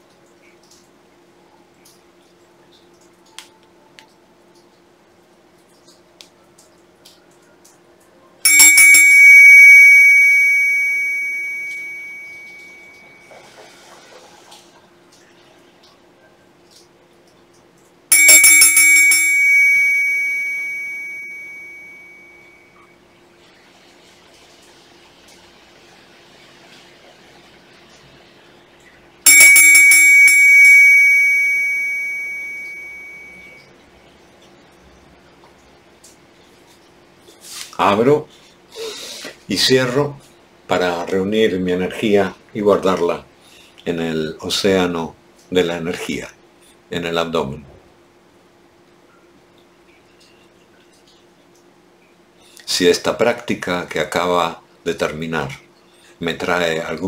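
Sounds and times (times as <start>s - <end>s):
meditation bell ringing: 8.5s - 13.4s, 18.1s - 22.9s, 29.3s - 33.7s.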